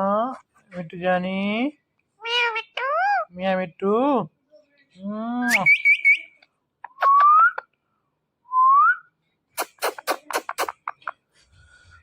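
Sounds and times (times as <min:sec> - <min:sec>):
parakeet squawking and chirping: 0:02.2 - 0:03.3.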